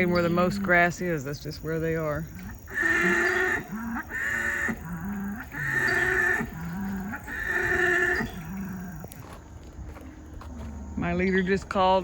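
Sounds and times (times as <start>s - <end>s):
bull bellowing: 0.0s - 9.2s.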